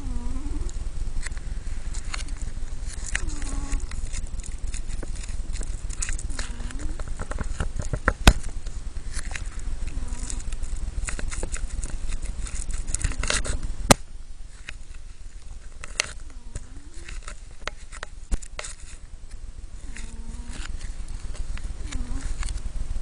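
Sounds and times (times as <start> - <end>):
cat snoring: 0.0 - 0.8, 3.2 - 3.9, 6.3 - 7.0, 9.8 - 10.4, 16.3 - 17.1, 19.8 - 20.6, 21.8 - 22.4.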